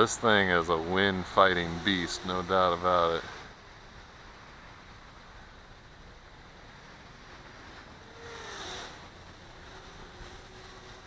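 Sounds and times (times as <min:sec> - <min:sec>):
quadcopter motors whining: 0:00.0 - 0:03.6, 0:07.8 - 0:11.0.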